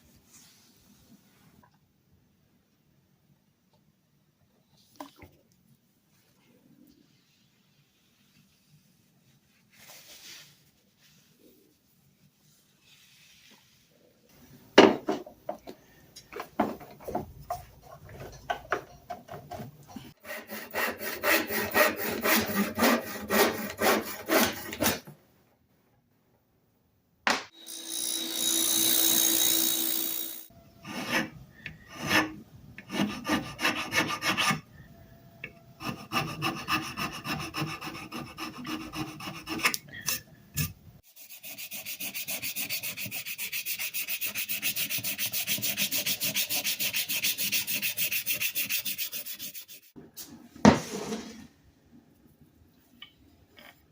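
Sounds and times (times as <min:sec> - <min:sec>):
filing and sanding scrapes: 0:20.2 - 0:25.0, 0:30.8 - 0:34.7, 0:35.8 - 0:40.2, 0:41.0 - 0:50.0.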